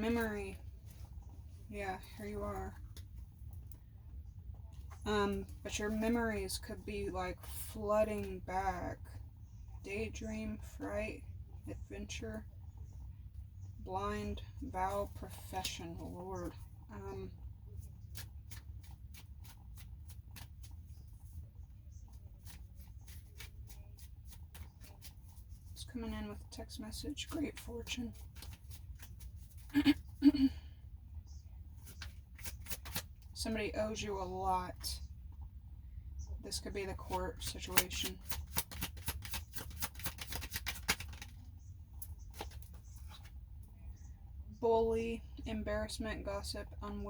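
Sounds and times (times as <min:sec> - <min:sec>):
faint low hum: 0:00.0 - 0:47.0
cards being shuffled: 0:18.1 - 0:21.0, 0:22.2 - 0:25.4, 0:28.1 - 0:30.0, 0:31.8 - 0:33.2, 0:37.1 - 0:43.3.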